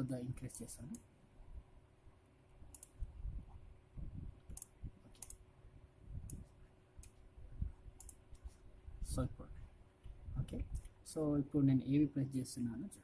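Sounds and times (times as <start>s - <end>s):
mouse and keyboard clicks: 2.7s - 3.0s, 4.5s - 5.4s, 8.0s - 8.5s.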